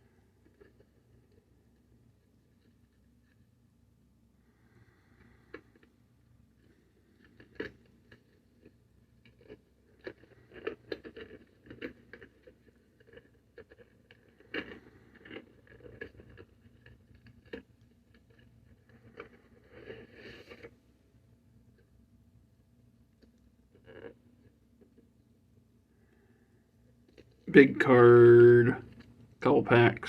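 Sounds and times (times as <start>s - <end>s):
packaging crinkling and scraping: 6.6s - 20.8s.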